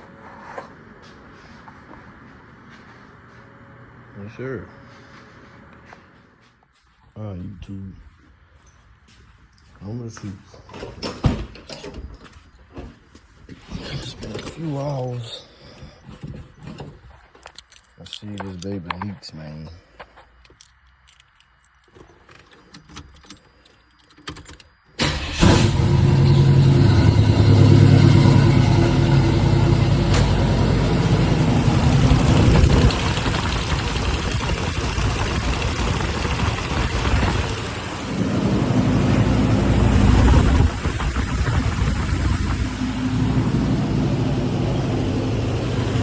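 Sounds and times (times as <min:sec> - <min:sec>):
car engine cranking and idling: 0:20.4 - 0:46.0.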